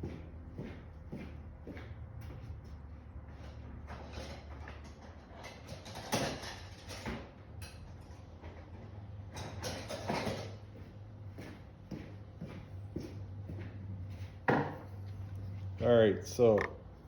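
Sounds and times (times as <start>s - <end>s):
tools knocking and rattling: 3.9s - 8.6s, 9.3s - 10.6s.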